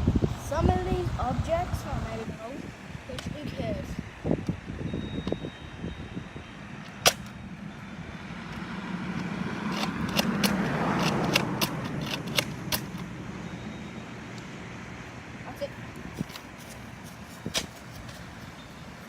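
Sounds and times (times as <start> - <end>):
sharp clicks: 6.8 - 7.4, 8.5 - 13.1
car passing by: 7.8 - 12.2.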